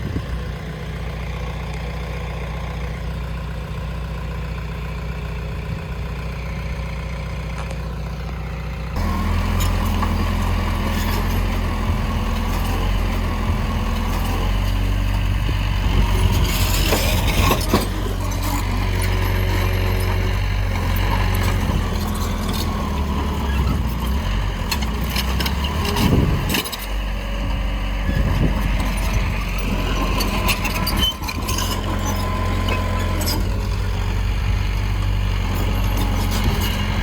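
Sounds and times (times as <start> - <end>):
heavy diesel machinery running: 0.0 - 37.0
metal clanks and knocks: 15.8 - 22.7.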